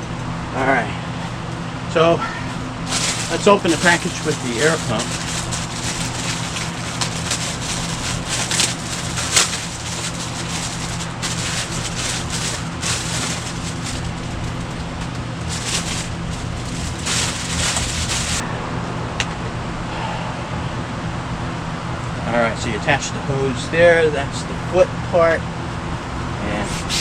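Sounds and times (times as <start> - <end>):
steady low hum: 0.0 - 27.0
plastic packaging crinkling: 2.9 - 18.4.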